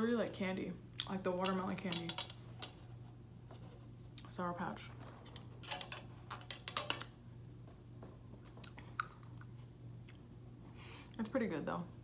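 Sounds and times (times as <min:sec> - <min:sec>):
small mouth clicks: 0:08.6 - 0:10.2
lip smacks: 0:08.6 - 0:10.3.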